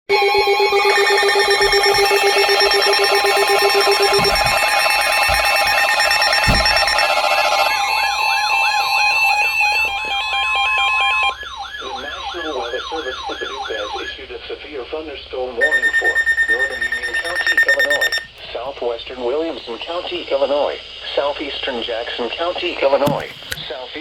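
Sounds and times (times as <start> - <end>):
electronic alarm beeps: 0.1 - 14.2, 15.6 - 18.4
high-low two-tone alarm: 0.1 - 14.4, 15.6 - 18.4
rising and falling siren sweeps: 0.2 - 14.1.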